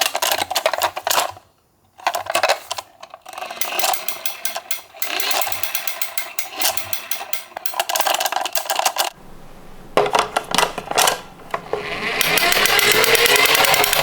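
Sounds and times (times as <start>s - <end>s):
toy car wheels rattling on track: 2.0s - 9.2s, 10.0s - 14.0s
sharp clicks: 3.6s - 14.0s.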